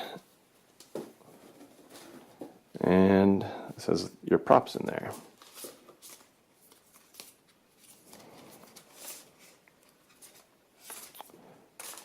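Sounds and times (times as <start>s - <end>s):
packaging rustling: 5.1s - 12.0s.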